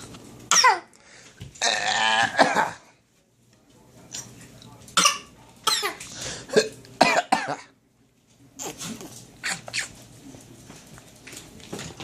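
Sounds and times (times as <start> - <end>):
young child fake-coughing: 0.5 - 0.9, 5.0 - 7.7.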